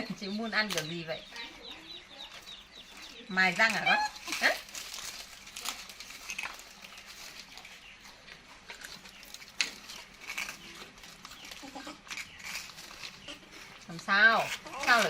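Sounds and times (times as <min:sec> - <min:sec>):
monkey chewing crunchy rice cake: 0:00.0 - 0:15.0.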